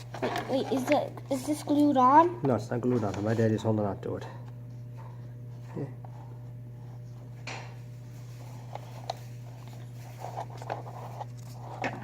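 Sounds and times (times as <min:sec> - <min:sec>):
steady low hum: 0:00.0 - 0:12.0
paper rustling: 0:08.1 - 0:12.0.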